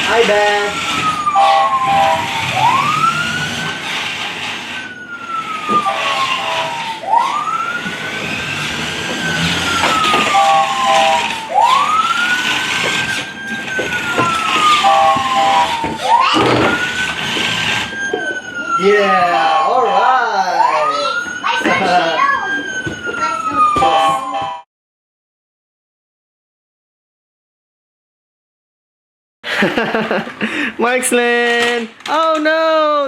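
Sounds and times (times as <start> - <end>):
toy siren wailing: 0.0 - 24.6
short horn-like beep: 19.1 - 20.3.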